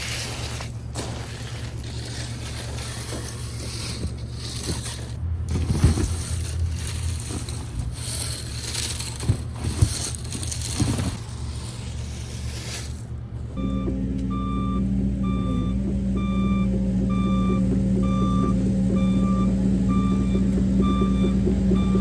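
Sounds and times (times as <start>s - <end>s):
gravel crunching under bucket: 0.0s - 13.6s
excavator diesel engine running: 0.0s - 22.0s.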